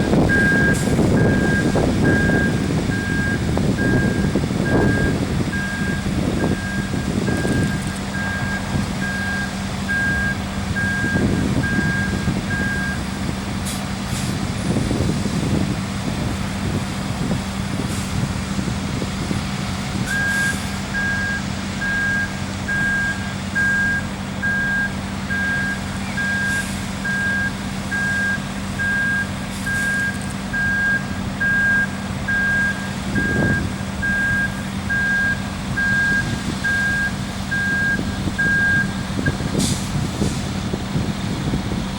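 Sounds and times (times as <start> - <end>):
reversing alarm beeping: 0.0 - 13.0, 20.1 - 39.4
diesel truck engine running: 0.0 - 41.9.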